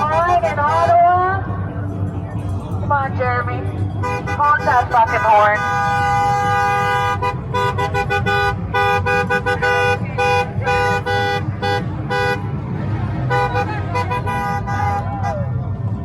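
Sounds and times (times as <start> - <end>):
vehicle horn honking: 4.0 - 12.5, 13.3 - 15.4.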